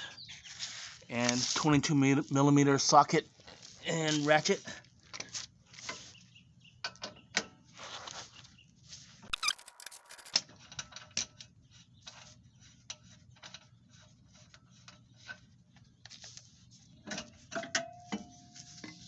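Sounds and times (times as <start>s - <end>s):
metallic clatter: 9.3s - 10.4s.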